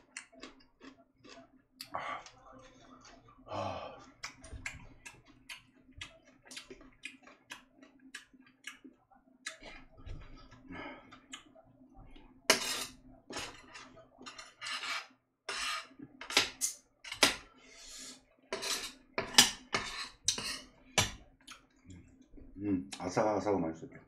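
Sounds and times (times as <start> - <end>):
utensils scraping and clinking dishes: 12.5 - 17.4, 18.5 - 20.8.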